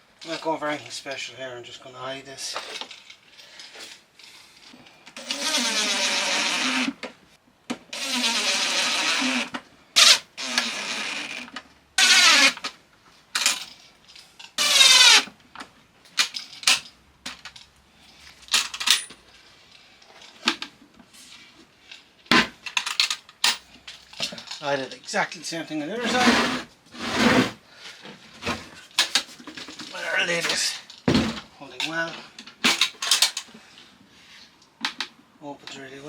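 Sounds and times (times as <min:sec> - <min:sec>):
power drill running: 0:05.2 - 0:07.0, 0:08.0 - 0:12.6, 0:14.6 - 0:15.3.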